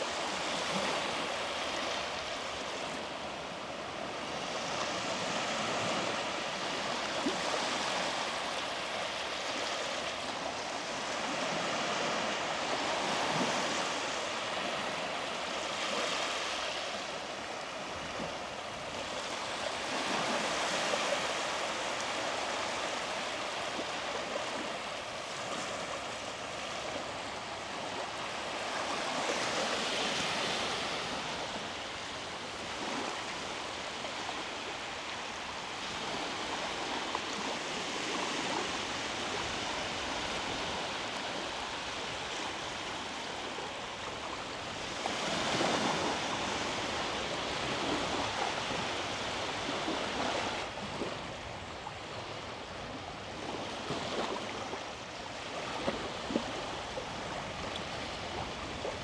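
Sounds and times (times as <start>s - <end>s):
small waves breaking on beach: 0.0s - 59.0s.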